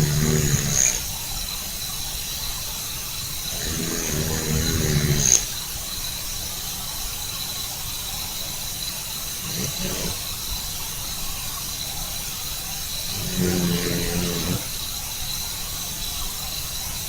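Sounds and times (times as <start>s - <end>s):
steady hiss: 0.0s - 17.0s
thin high-pitched whine: 0.0s - 17.0s
cat breathing quietly: 9.4s - 10.5s.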